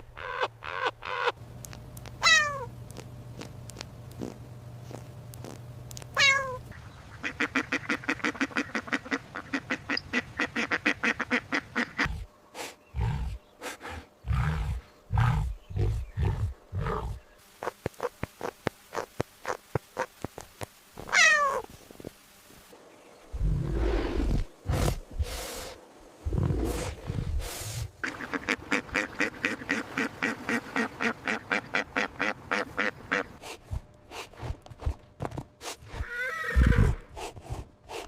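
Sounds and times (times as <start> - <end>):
quack-like pulses: 28.0 - 34.3.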